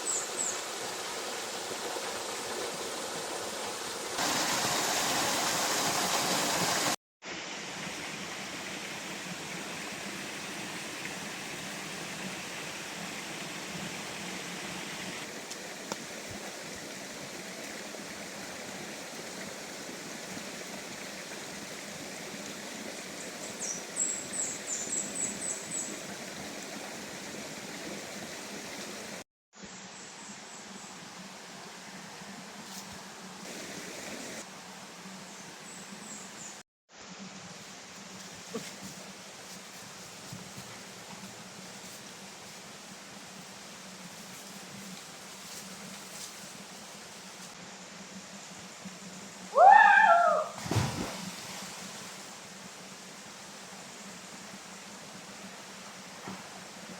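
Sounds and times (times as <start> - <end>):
water rushing: 0.0 - 29.2, 33.2 - 35.1, 49.6 - 52.6.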